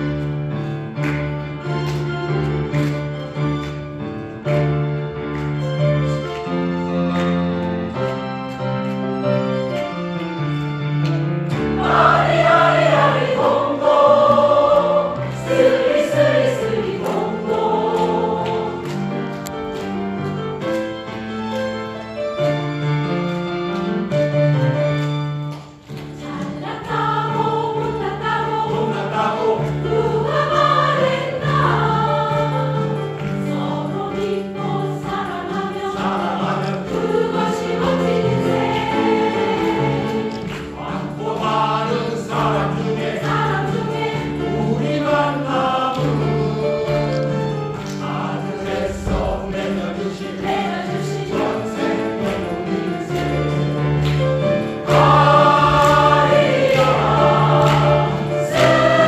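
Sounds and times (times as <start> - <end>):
choir singing sustained notes: 11.6 - 19.2, 26.2 - 46.9, 47.9 - 53.8, 54.4 - 59.0.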